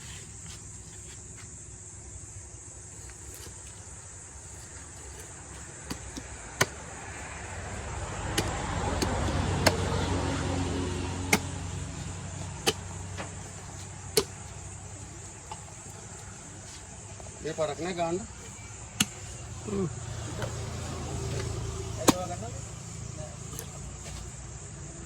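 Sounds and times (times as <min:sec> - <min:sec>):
high insect drone: 0:00.0 - 0:25.0
vehicle passing: 0:06.1 - 0:15.2, 0:19.2 - 0:25.0
sharp knocks: 0:08.3 - 0:10.2.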